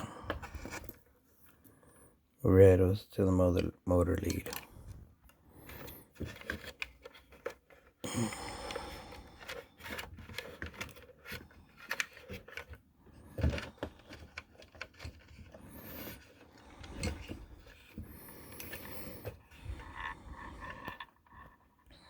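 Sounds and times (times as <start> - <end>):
hands handling small parts: 3.6 - 8.0, 9.4 - 21.6.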